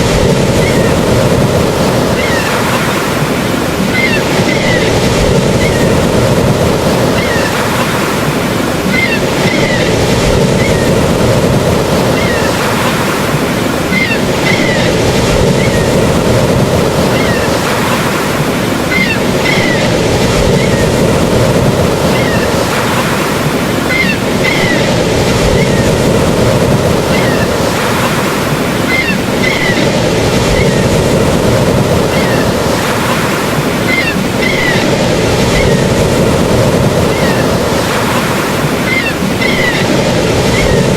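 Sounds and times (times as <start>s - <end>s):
water rushing: 0.0s - 40.9s.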